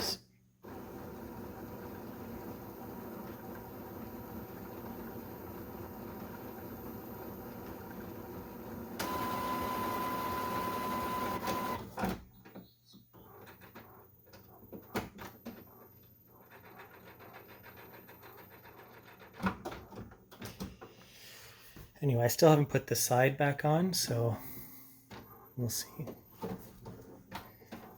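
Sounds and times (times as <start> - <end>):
printer mechanism whirring: 0.6 - 12.2
printer mechanism clicks and clunks: 9.0 - 12.6.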